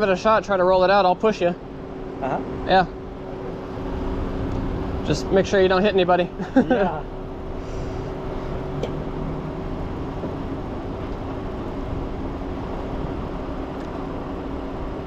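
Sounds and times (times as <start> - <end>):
vehicle engine idling: 0.0 - 15.0.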